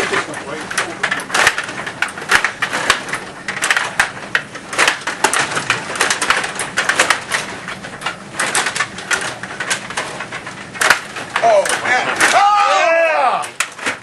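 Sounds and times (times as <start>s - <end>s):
table hockey rods and puck clacking: 0.0s - 14.0s.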